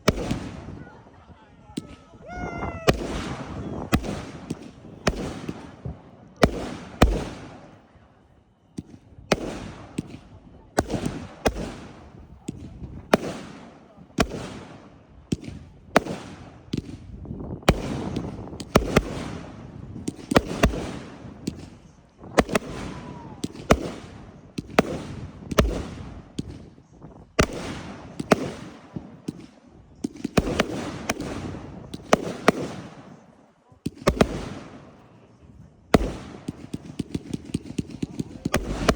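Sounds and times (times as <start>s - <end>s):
fireworks crackling: 0.0s - 7.9s, 27.4s - 35.2s, 35.8s - 38.9s
fireworks bangs and booms: 0.0s - 38.9s.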